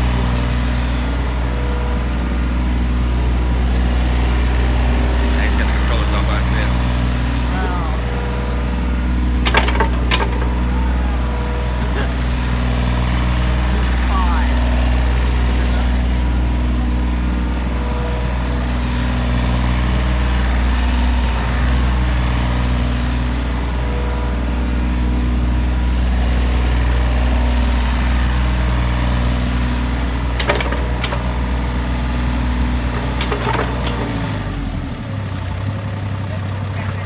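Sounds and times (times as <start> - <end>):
excavator diesel engine running: 0.0 - 37.0
sharp metal clanks: 9.4 - 12.5, 30.4 - 31.4, 32.9 - 34.2.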